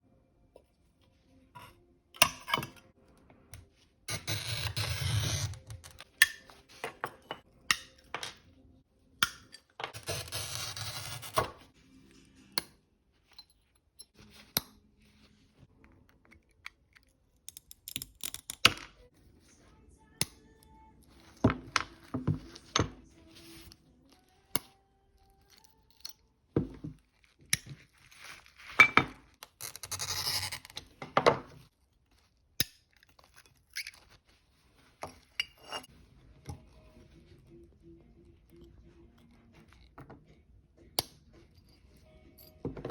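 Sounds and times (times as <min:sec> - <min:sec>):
glass cutter scoring glass: 0:04.1 - 0:06.4, 0:09.3 - 0:11.6.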